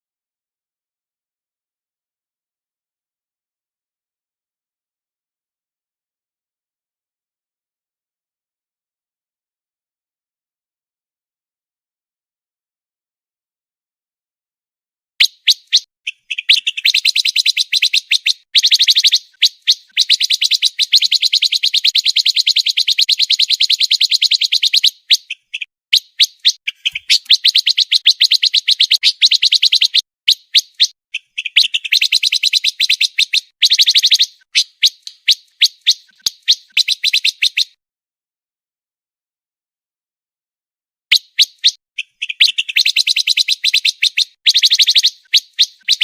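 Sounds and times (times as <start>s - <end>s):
songbird chirping rapidly: 15.2s - 37.8s, 41.1s - 46.0s.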